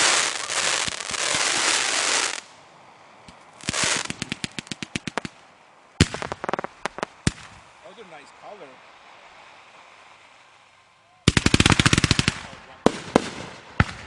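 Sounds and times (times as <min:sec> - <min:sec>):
firework crackle: 0:00.0 - 0:14.0
sharp firework pops: 0:03.3 - 0:05.4, 0:06.0 - 0:07.6, 0:11.3 - 0:14.0
loud firework bang: 0:06.0 - 0:07.6.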